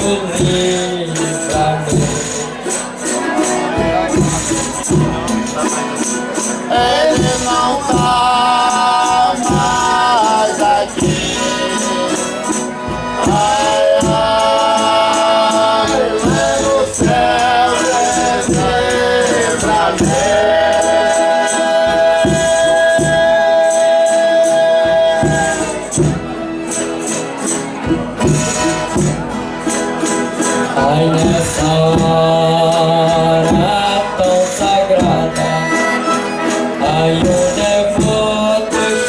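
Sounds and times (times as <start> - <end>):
tambourine beaten and shaken: 0.0 - 39.0
group singing a hymn: 6.7 - 26.3.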